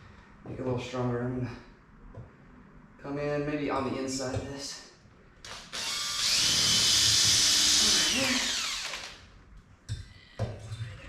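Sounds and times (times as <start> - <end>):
power drill boring into wood: 5.5 - 9.2.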